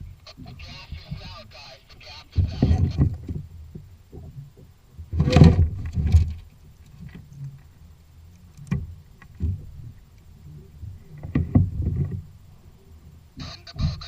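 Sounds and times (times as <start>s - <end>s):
thumps on a kayak: 5.1s - 6.4s, 11.2s - 12.3s.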